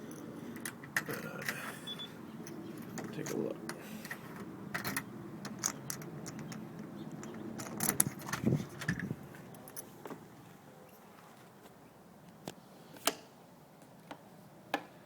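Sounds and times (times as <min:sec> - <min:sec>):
keys jangling: 0:04.7 - 0:09.9.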